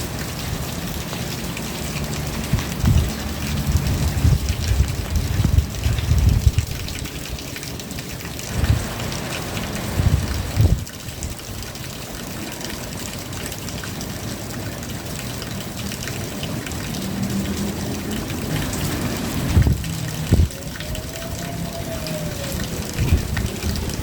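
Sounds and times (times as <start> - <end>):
raindrops ticking on surfaces: 0.0 - 24.0
steady rain falling: 0.0 - 24.0.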